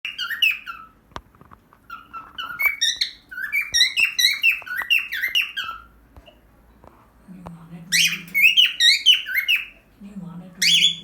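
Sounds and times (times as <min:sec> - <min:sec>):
cockatiel whistling: 0:00.1 - 0:00.9, 0:01.9 - 0:05.9, 0:08.0 - 0:09.7.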